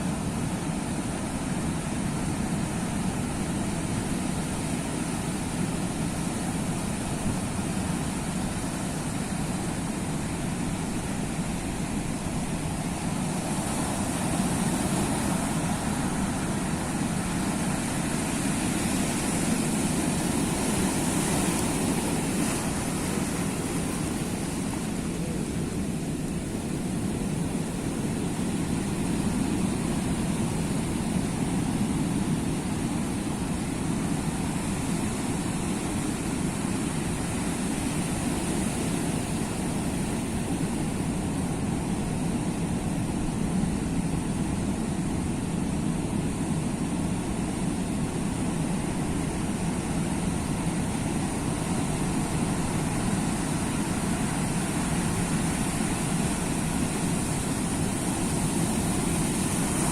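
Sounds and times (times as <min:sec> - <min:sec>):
low wash of waves: 0:00.0 - 0:59.9.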